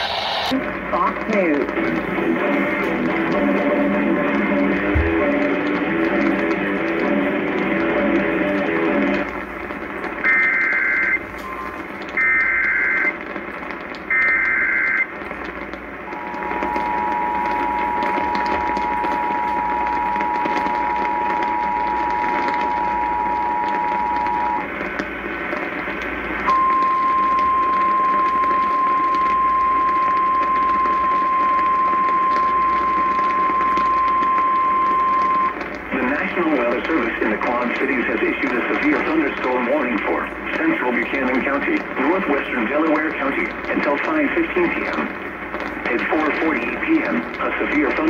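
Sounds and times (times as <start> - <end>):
radio hiss: 0.0 - 48.0
digital data bursts: 10.0 - 15.3, 16.0 - 24.8, 25.6 - 48.0
two-tone attention signal: 10.3 - 13.2, 16.1 - 24.7, 26.5 - 35.6.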